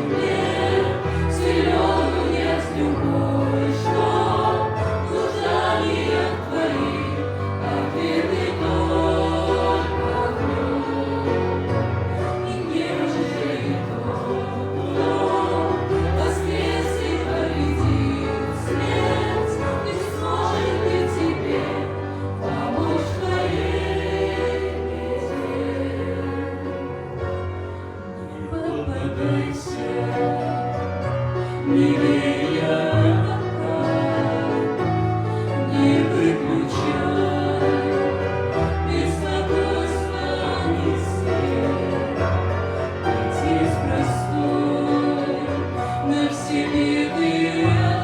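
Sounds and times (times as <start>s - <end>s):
choir singing a hymn: 0.0s - 48.0s
sustained accompaniment: 0.0s - 48.0s.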